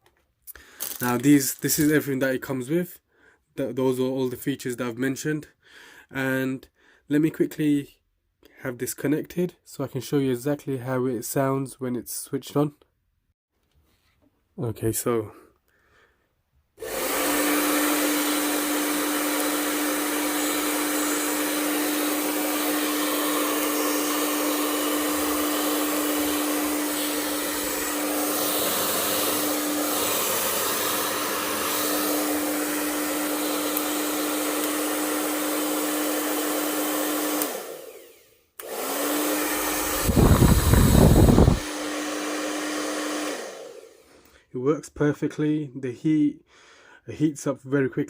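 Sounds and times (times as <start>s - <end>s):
hair dryer running: 16.8s - 44.3s.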